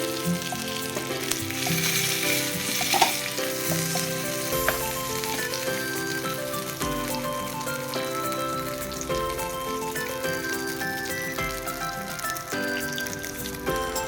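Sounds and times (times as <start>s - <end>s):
chicken sizzling on a griddle: 0.0s - 14.0s.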